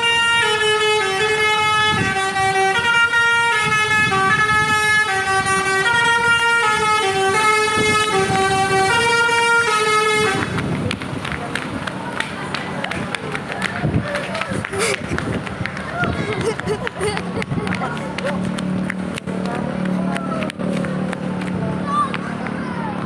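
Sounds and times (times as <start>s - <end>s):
musical bus horn playing tune: 0.0s - 10.6s.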